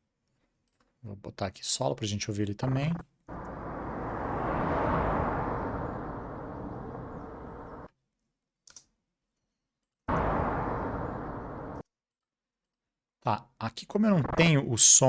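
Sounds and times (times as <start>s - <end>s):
car passing by slowly: 3.3s - 7.9s, 10.1s - 11.8s.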